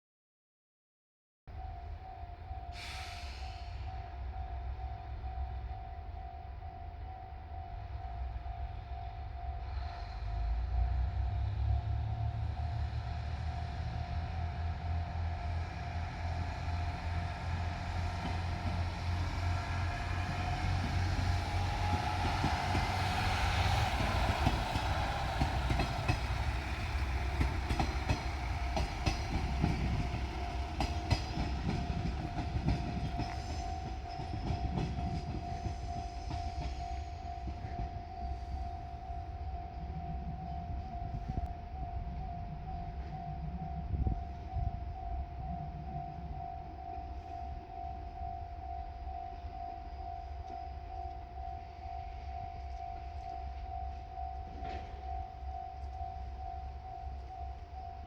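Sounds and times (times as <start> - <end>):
crossing warning signal tone: 1.5 - 58.0
diesel train engine running: 1.8 - 52.8
wheels clicking over rail joints: 17.1 - 38.2.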